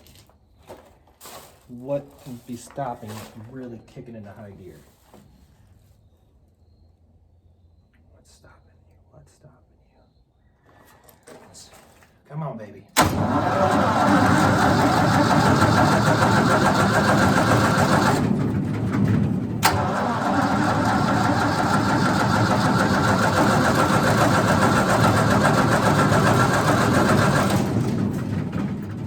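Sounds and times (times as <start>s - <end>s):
wood chipper engine running: 13.0s - 29.0s.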